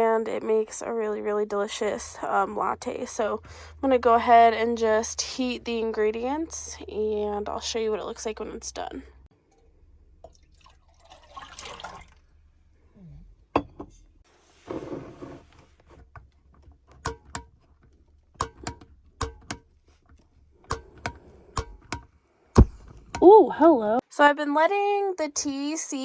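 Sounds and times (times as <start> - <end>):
liquid poured into a pot: 9.6 - 12.4
kitchen items clicking and knocking: 13.6 - 14.1, 16.2 - 23.4.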